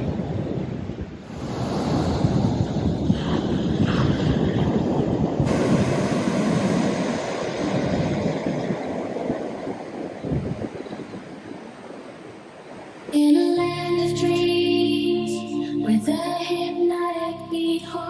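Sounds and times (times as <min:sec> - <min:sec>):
wind rumbling on microphone: 0:00.0 - 0:13.2
ocean surf washing in: 0:00.0 - 0:16.4.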